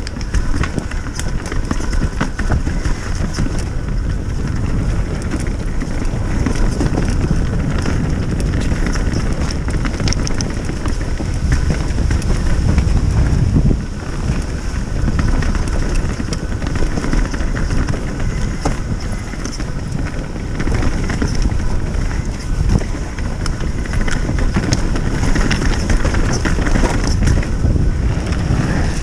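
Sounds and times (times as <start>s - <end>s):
mountain bike on dirt trail: 0.0s - 29.0s
wind buffeting microphone: 0.0s - 29.0s.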